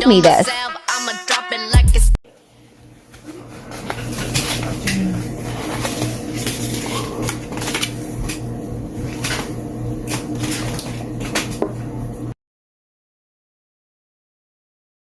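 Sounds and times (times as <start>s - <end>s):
steady low hum: 2.3s - 12.4s.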